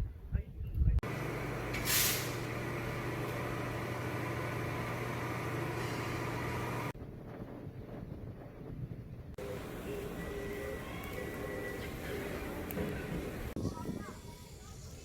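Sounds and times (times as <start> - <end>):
vehicle motor hum: 1.0 - 7.0, 9.4 - 13.6.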